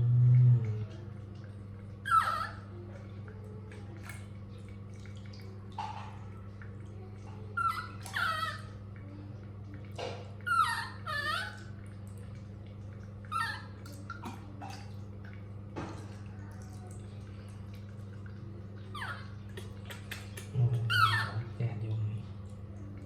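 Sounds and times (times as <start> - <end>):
low electrical hum: 0.0 - 23.0
baby monkey squealing: 2.0 - 2.6, 7.6 - 8.7, 10.4 - 11.7, 13.3 - 13.8, 18.9 - 19.3, 20.8 - 21.5.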